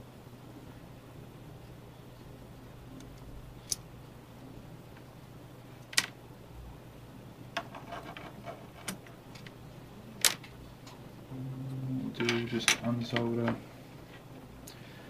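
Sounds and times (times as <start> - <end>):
faint steady hum: 0.0 - 15.0
small parts clicking and tapping: 3.0 - 3.8.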